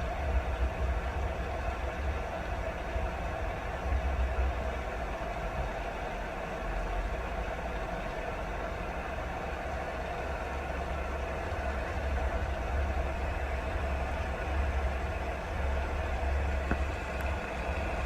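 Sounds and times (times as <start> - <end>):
rain falling: 8.0 - 18.0.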